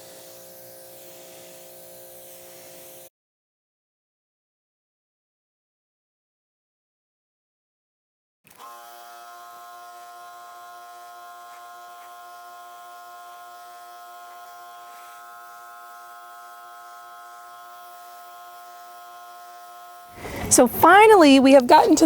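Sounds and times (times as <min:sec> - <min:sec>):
pressure washer whining: 0:12.8 - 0:22.0.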